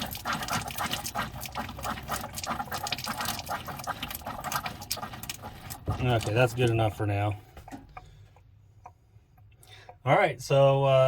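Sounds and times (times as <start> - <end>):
water spattering from faucet: 0.0 - 7.0.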